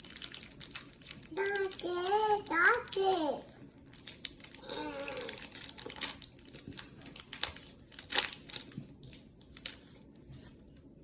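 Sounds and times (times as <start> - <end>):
snack packaging crinkling: 0.0 - 10.3.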